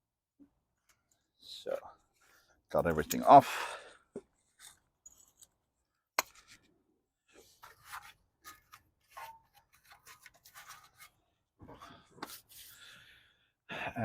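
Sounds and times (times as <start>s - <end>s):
tools clicking and scraping: 4.5s - 6.7s, 7.4s - 11.2s.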